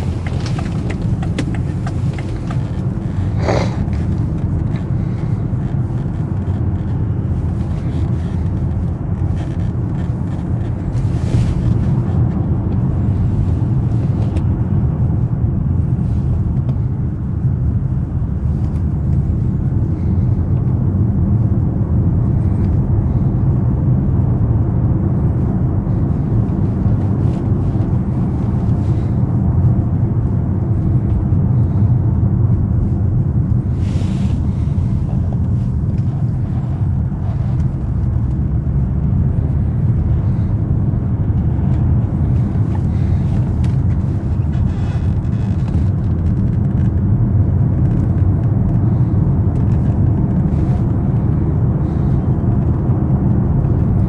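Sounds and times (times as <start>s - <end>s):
car engine rumble and road noise: 0.0s - 54.0s.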